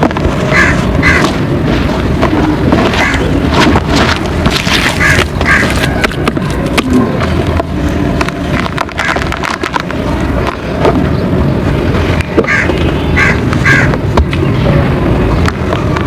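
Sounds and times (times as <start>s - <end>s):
mud crunching and squishing: 0.0s - 11.0s.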